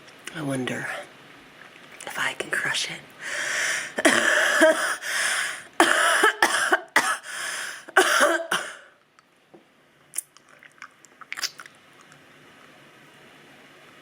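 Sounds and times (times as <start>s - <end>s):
woman coughing: 4.0s - 5.0s, 5.8s - 7.3s, 7.9s - 8.9s.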